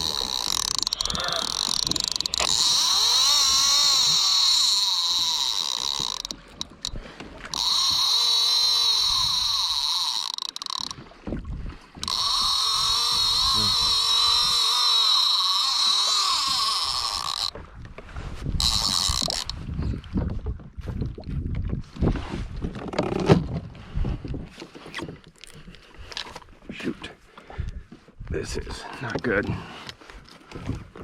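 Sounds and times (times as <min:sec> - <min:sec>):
fishing reel whining: 0:00.0 - 0:11.1, 0:11.9 - 0:17.6, 0:18.6 - 0:19.6.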